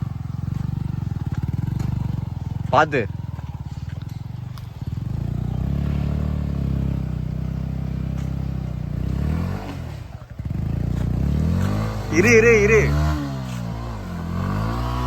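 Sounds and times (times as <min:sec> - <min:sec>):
motorcycle engine under load: 0:00.0 - 0:15.0.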